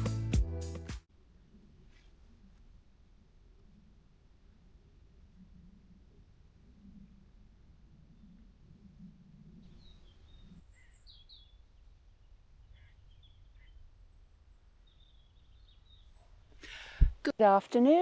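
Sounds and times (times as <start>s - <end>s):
birds chirping: 9.7s - 16.6s.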